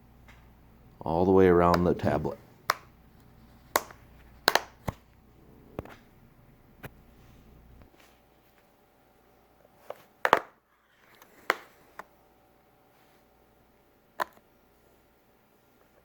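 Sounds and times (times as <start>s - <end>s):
plastic clips popping loose: 3.7s - 5.0s.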